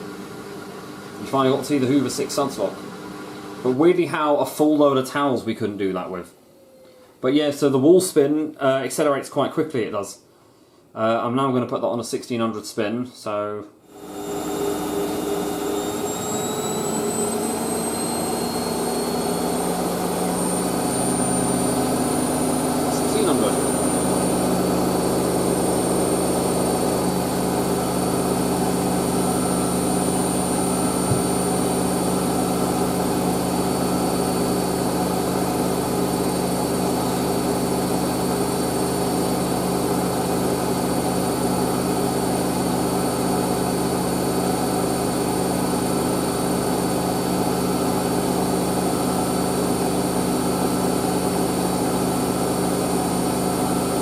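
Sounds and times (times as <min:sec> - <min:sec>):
washing machine drum spinning: 0:14.7 - 0:39.3.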